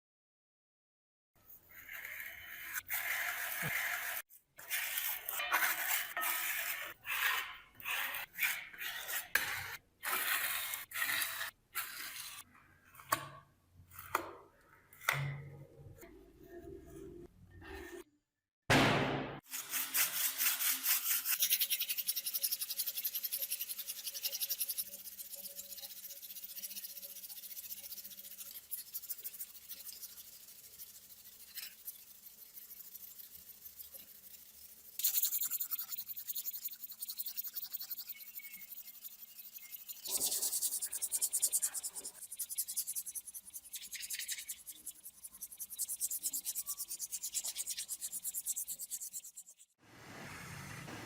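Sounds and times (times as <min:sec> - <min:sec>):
hand scrubbing rusty metal: 0:19.5 - 0:49.7.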